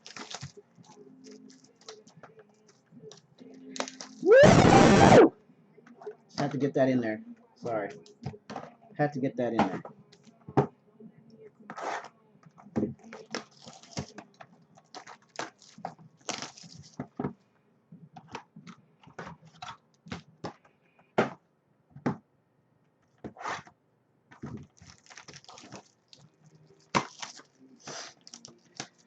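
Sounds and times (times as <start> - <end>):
packaging tearing rustles: 0.0 - 2.1, 13.0 - 14.2, 14.8 - 17.0, 24.6 - 29.0
plastic wrap and cardboard crackling: 0.0 - 4.5, 11.7 - 17.2, 24.3 - 29.0.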